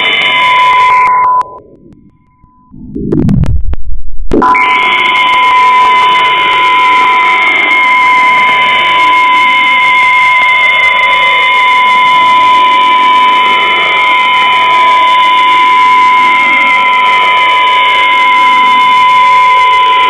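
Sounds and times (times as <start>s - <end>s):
steady beep tone: 0.0s - 7.4s
radio static: 0.1s - 5.6s
higher tone: 0.3s - 6.4s.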